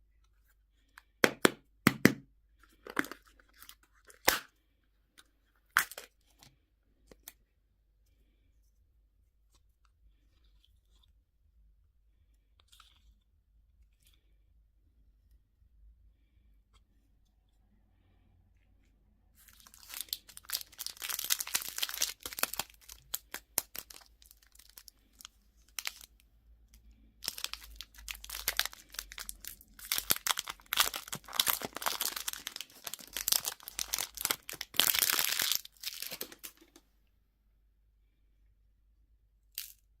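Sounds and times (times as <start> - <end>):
candy wrapper crinkling: 5.7 - 6.4, 19.4 - 26.2, 27.2 - 36.8.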